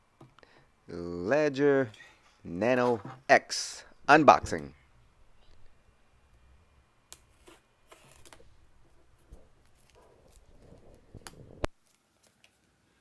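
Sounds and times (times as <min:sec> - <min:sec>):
cardboard packaging rustling: 0:07.3 - 0:12.7.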